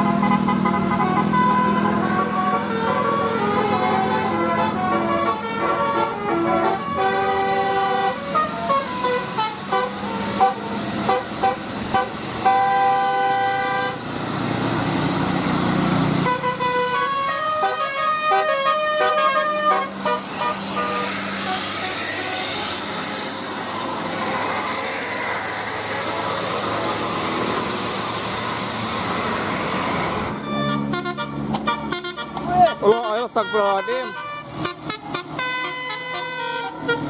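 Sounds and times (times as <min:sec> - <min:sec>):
musical air horn playing tunes: 0:00.0 - 0:14.0, 0:16.2 - 0:22.6, 0:30.4 - 0:37.0
rushing noise: 0:19.8 - 0:30.5.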